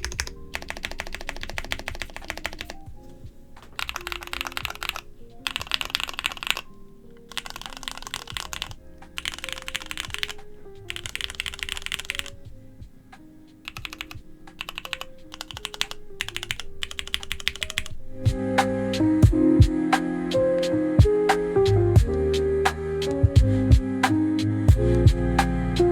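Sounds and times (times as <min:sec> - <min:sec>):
mechanical keyboard typing: 0:00.0 - 0:02.9, 0:03.6 - 0:12.5, 0:13.6 - 0:18.2
background music: 0:00.0 - 0:25.9.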